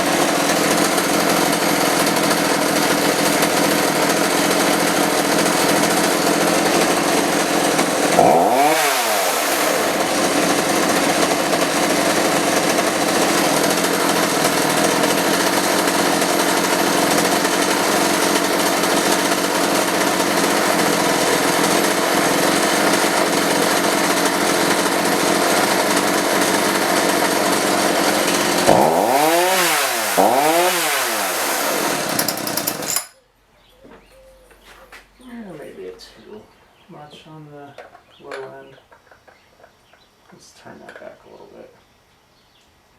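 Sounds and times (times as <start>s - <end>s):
chainsaw engine running: 0.0s - 33.1s.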